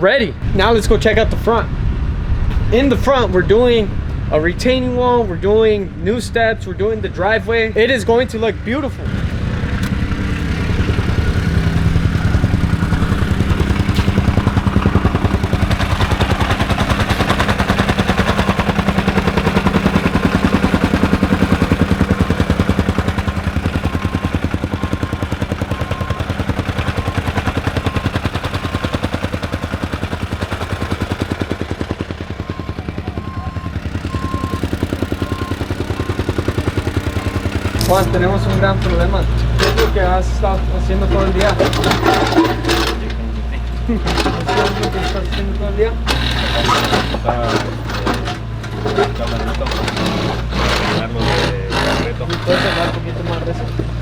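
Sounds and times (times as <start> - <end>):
machinery pulsing clatter: 0.4 - 54.0
faint beep: 32.5 - 34.6.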